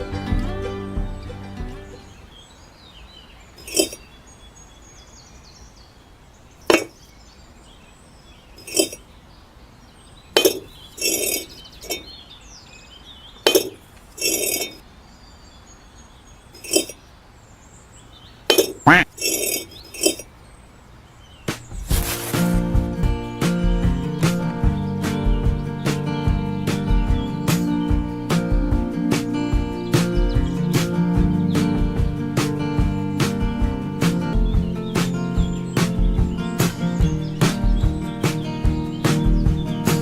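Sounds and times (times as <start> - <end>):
small hard objects clinking: 3.6 - 4.0, 8.6 - 9.0, 10.4 - 12.0, 13.5 - 14.8, 16.6 - 17.0.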